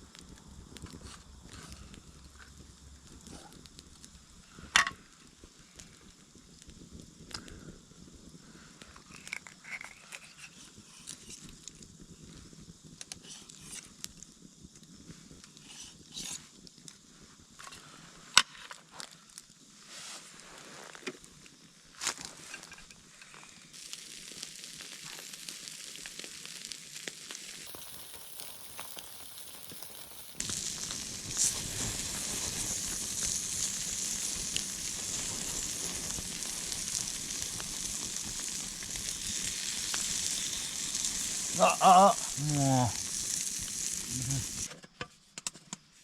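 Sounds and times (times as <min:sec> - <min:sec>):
food sizzling in a frying pan: 0:19.8 - 0:44.7.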